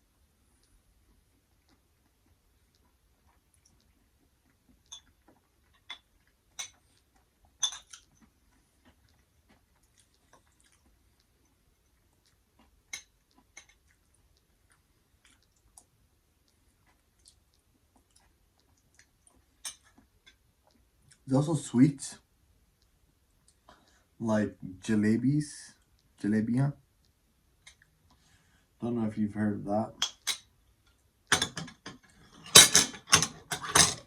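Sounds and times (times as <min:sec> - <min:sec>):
person chewing food: 0:00.1 - 0:21.2.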